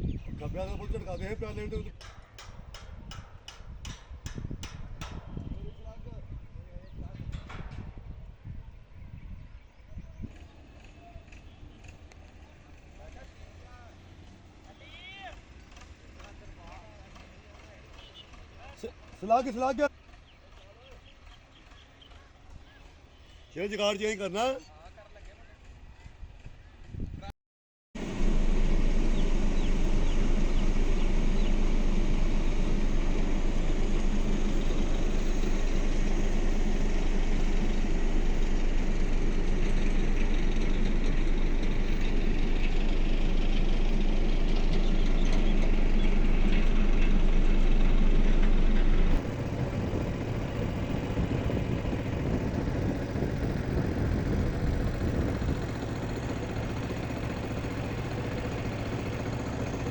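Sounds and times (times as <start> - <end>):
engine running: 0.0 - 23.2, 28.0 - 59.9
quieter lower engine note: 28.0 - 59.9.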